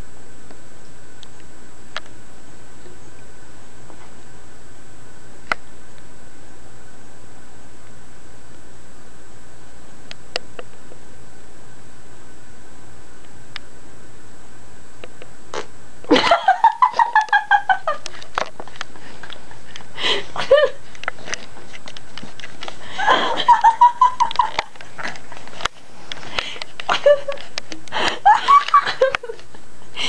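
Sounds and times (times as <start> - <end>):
people laughing: 16.1 - 18.2, 20.1 - 20.8, 22.9 - 24.7, 26.9 - 29.5.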